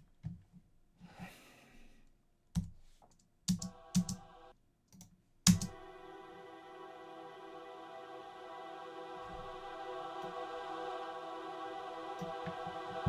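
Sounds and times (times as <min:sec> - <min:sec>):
computer keyboard and mouse clicks: 0:04.9 - 0:05.7
synth pad chord: 0:05.7 - 0:13.0.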